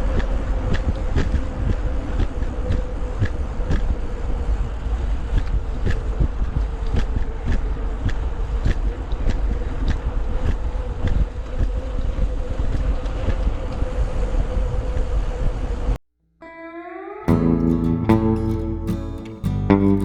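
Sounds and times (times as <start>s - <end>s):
falling tone: 16.4s - 20.0s
guitar music: 16.4s - 20.0s.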